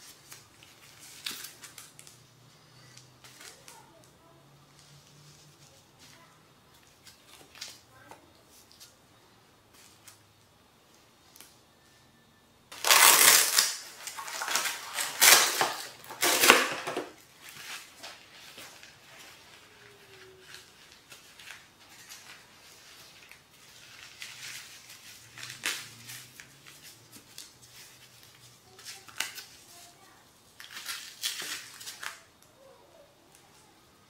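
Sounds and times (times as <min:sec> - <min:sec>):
packaging crinkling and rustling: 0:00.0 - 0:02.2, 0:02.8 - 0:04.1, 0:12.7 - 0:32.5.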